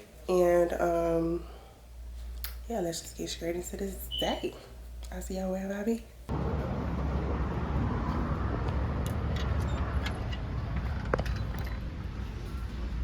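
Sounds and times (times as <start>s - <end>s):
car driving road noise: 6.3s - 13.0s.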